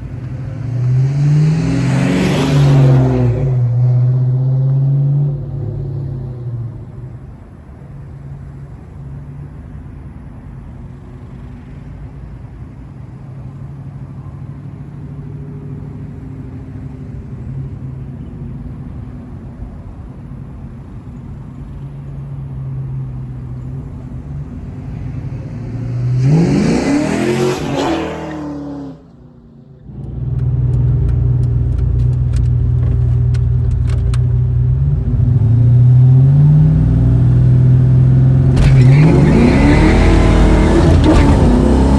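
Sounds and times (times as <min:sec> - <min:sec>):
car engine revving: 0:00.0 - 0:06.4, 0:23.2 - 0:41.9.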